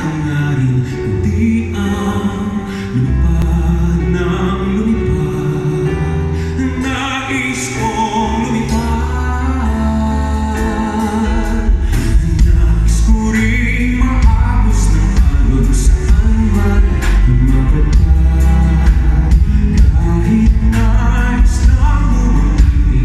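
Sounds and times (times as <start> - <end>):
band music with strong bass: 0.0 - 23.0
drum beats: 11.2 - 23.0.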